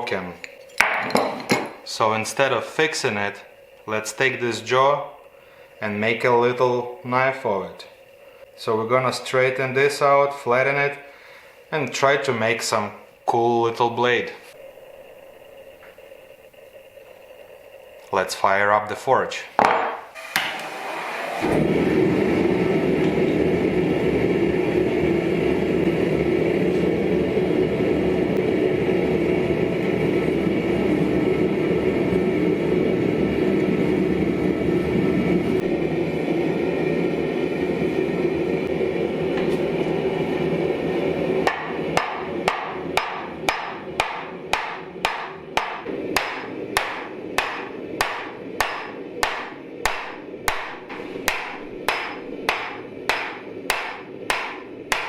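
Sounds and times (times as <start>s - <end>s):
forge burner rushing: 0.0s - 55.0s
hammer ringing on anvil: 41.5s - 55.0s.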